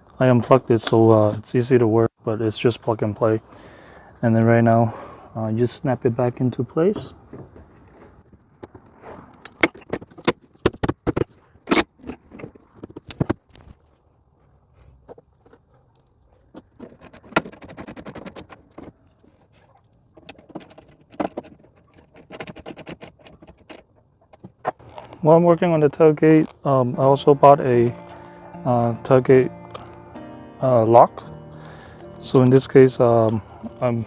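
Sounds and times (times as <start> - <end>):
plastic and metal parts clicking: 15.9 - 19.0, 19.9 - 25.2.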